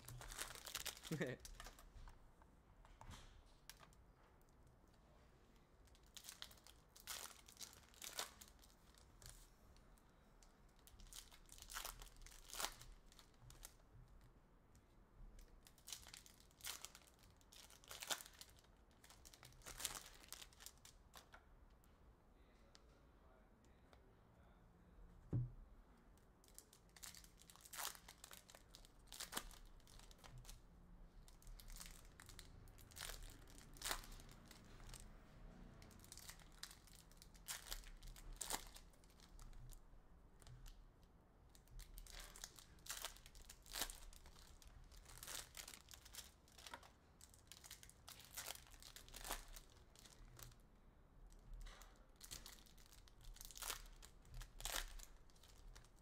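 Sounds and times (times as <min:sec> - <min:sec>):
wrappers tearing and crinkling: 0:00.0 - 0:01.9, 0:05.8 - 0:09.4, 0:10.7 - 0:13.8, 0:15.4 - 0:21.4, 0:26.4 - 0:30.6, 0:31.2 - 0:35.1, 0:35.8 - 0:39.8, 0:41.5 - 0:50.6, 0:51.3 - 0:56.0.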